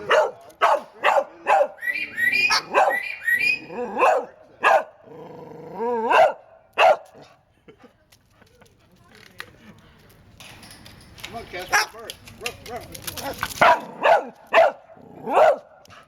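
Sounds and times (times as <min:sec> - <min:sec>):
parrot mimicking dog barks: 0:00.1 - 0:04.9.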